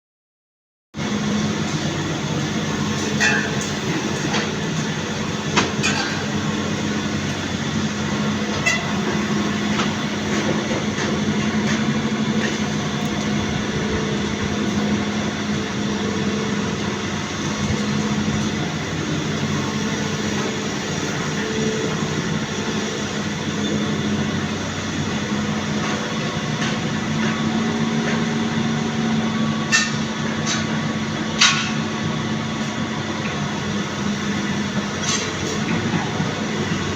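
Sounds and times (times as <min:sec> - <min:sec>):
excavator running: 0:01.0 - 0:36.9.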